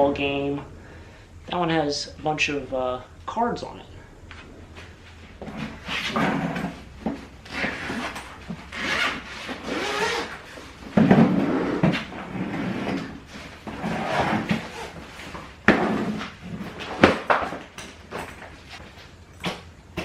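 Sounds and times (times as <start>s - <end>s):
wooden objects scraping: 4.4s - 18.8s.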